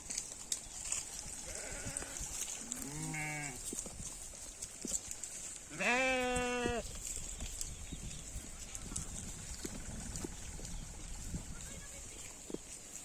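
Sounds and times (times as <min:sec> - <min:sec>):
goat bleating: 0:01.4 - 0:02.2, 0:02.8 - 0:03.6, 0:05.7 - 0:06.8.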